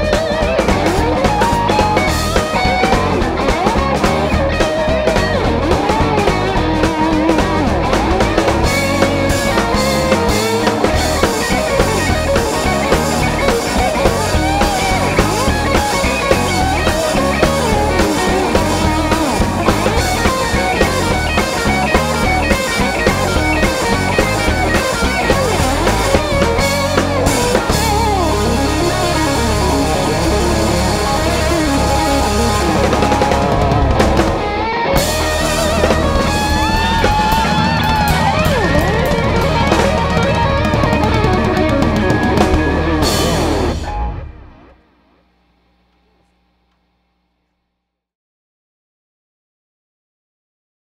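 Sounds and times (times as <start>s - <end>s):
live rock band playing: 0.0s - 44.8s
electric guitar: 0.0s - 47.5s.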